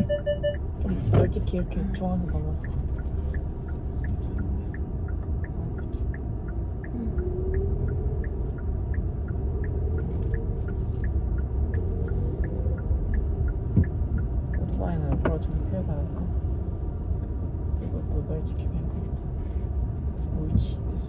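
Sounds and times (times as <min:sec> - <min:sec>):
road and engine rumble: 0:00.0 - 0:21.0
turn signal ticking: 0:00.0 - 0:21.0.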